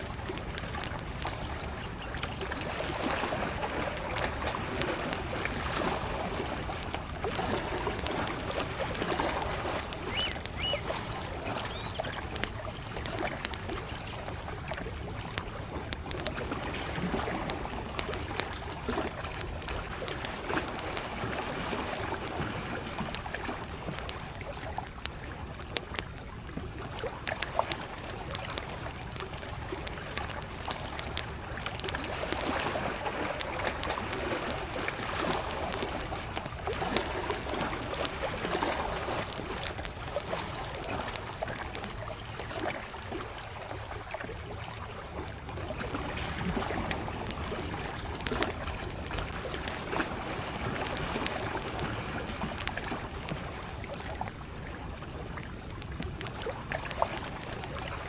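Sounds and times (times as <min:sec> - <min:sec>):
bird calls: 0:00.0 - 0:00.2, 0:01.6 - 0:03.1, 0:05.6 - 0:06.7, 0:10.0 - 0:13.1, 0:13.8 - 0:14.8
campfire crackling and popping: 0:00.0 - 0:58.0
lake waves lapping at shore: 0:00.0 - 0:58.0.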